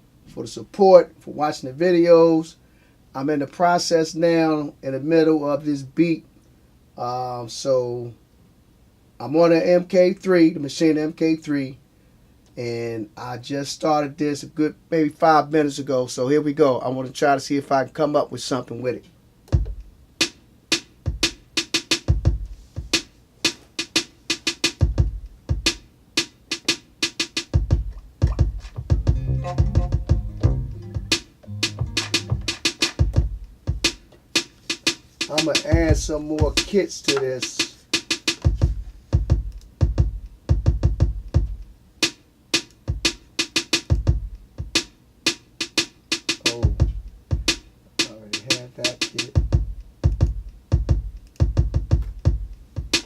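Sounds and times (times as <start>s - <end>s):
deep kick drums: 19.5s - 20.0s, 21.1s - 21.4s, 22.1s - 23.0s, 24.8s - 25.8s, 27.6s - 34.0s, 35.7s - 36.8s, 38.4s - 41.7s, 42.9s - 43.2s, 43.9s - 44.8s, 46.6s - 47.6s, 49.4s - 53.0s
snare and hi-hat hits: 19.5s - 53.0s
sharp crisp drum hits: 26.6s - 41.6s.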